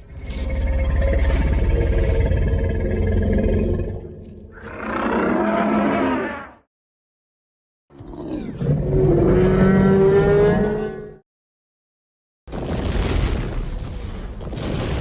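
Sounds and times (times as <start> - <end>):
deep creature calls: 0.3 - 6.6.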